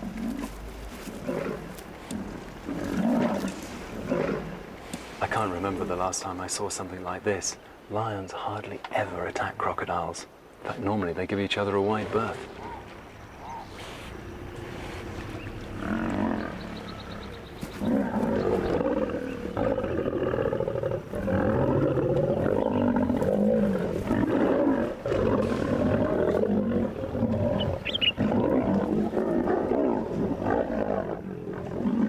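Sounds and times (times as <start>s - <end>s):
lions snarling and roaring: 0.0s - 6.1s, 12.1s - 32.0s.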